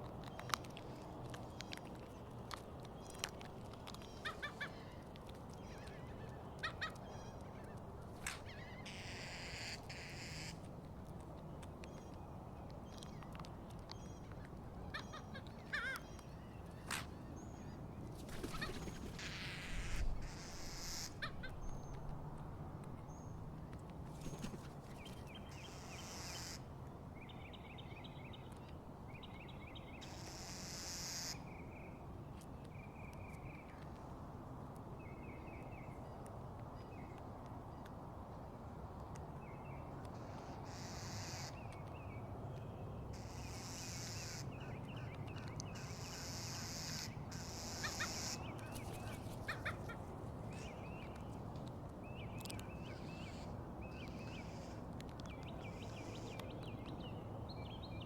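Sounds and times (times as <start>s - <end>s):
birds chattering: 45.4s - 51.3s.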